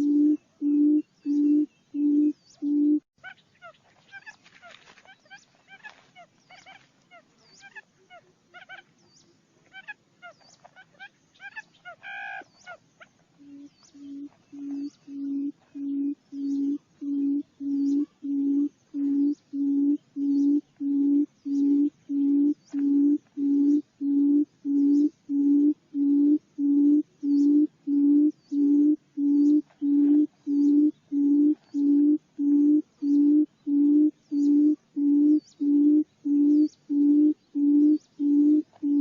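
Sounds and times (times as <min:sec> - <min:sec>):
bird booming low hoots: 0:00.0 - 0:03.0, 0:13.4 - 0:39.0
higher bird chirps: 0:00.0 - 0:04.4, 0:05.0 - 0:39.0.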